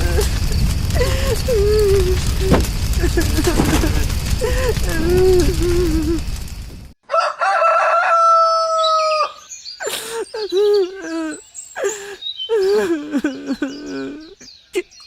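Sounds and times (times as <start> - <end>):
rooster crowing: 7.0 - 9.4.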